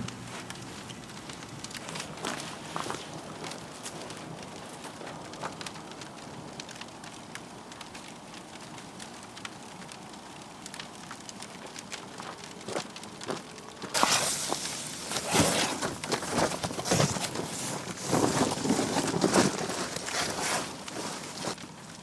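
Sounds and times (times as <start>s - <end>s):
wood fire crackling: 0.0s - 22.0s
close rustling and knocking: 14.0s - 21.6s.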